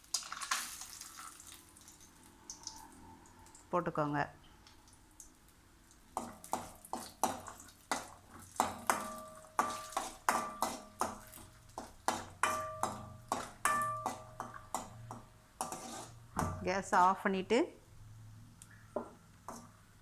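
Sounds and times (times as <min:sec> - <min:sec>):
frying in oil: 0:00.0 - 0:17.2, 0:18.6 - 0:20.0
metal spoon knocking against pan: 0:06.2 - 0:15.8, 0:16.4 - 0:16.7.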